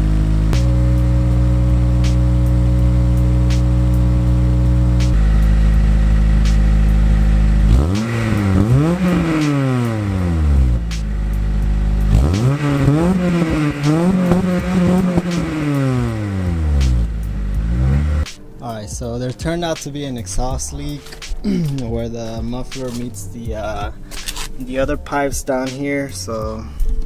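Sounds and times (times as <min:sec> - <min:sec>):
car engine idling: 0:00.0 - 0:18.4
car engine revving: 0:00.0 - 0:18.4.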